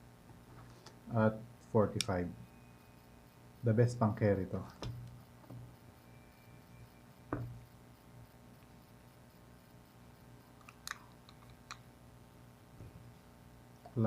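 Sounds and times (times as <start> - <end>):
low steady hum: 0.0 - 14.0
small clicks: 10.5 - 11.9.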